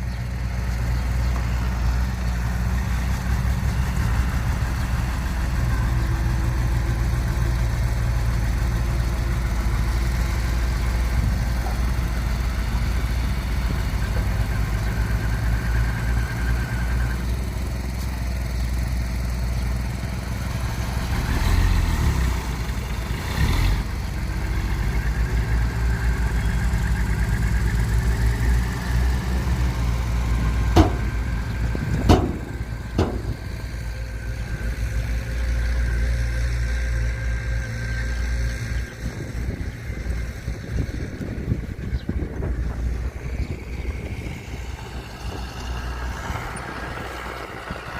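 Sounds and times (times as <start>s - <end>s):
heavy diesel engine running: 0.0s - 47.9s
sharp knocks: 30.7s - 31.3s, 31.9s - 33.7s.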